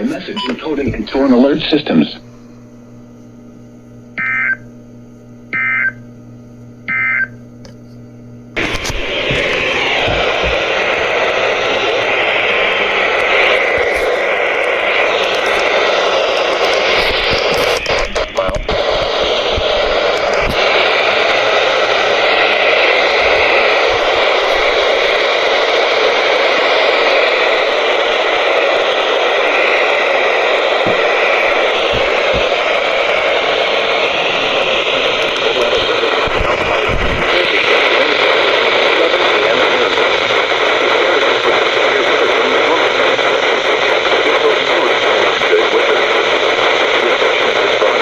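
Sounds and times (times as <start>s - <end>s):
radio static hiss: 0.0s - 48.0s.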